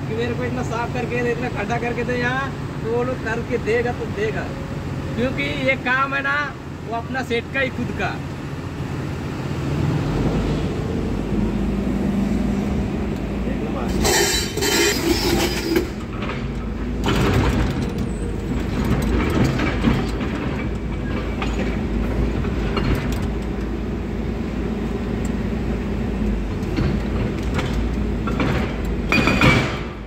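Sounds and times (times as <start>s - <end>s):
heavy construction machinery running: 0.0s - 30.0s
metallic clanks and knocks: 13.9s - 23.6s, 26.6s - 30.0s.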